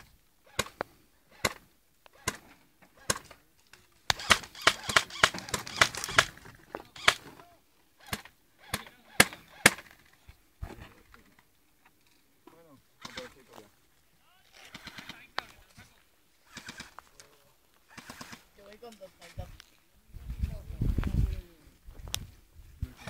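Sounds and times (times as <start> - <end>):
airsoft guns firing: 0.5 - 3.3, 4.1 - 7.3, 8.0 - 10.1, 13.0 - 13.6, 14.6 - 15.5, 16.5 - 17.0, 17.9 - 18.5.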